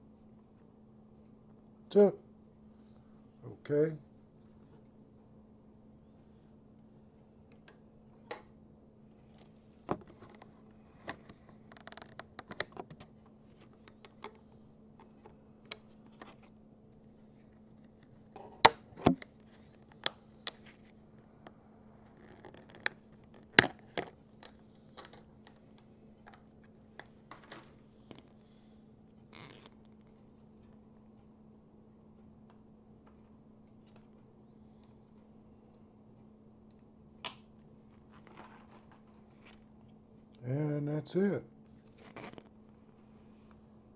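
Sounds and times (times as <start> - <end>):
faint steady hum: 0.0 - 43.9.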